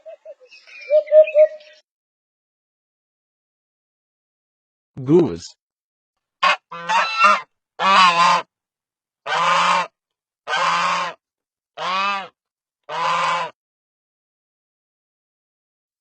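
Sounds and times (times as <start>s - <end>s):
goose honking: 6.4s - 8.5s, 9.3s - 9.9s, 10.5s - 11.2s, 11.8s - 13.6s.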